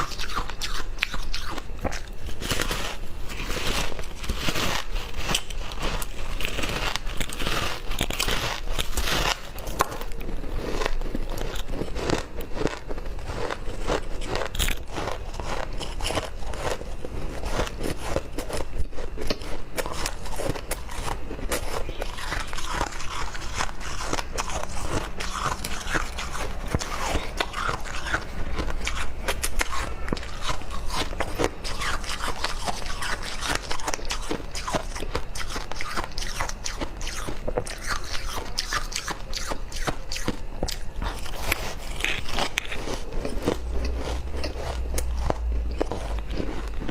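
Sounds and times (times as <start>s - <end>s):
person chewing ice: 0.0s - 46.9s.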